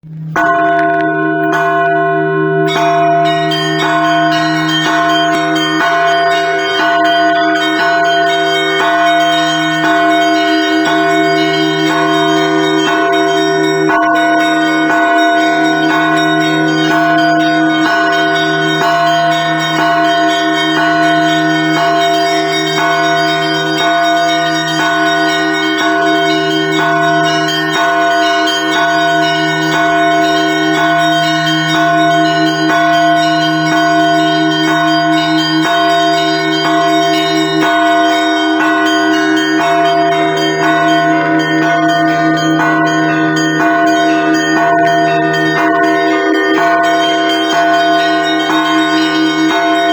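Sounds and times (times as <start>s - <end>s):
deep church bells humming: 0.0s - 49.9s
small bells struck rapidly: 0.1s - 49.9s.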